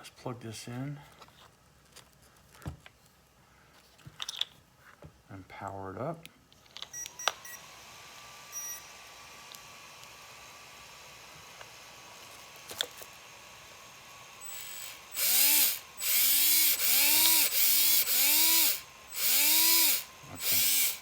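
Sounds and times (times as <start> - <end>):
electric motor whining up: 7.0 - 21.0.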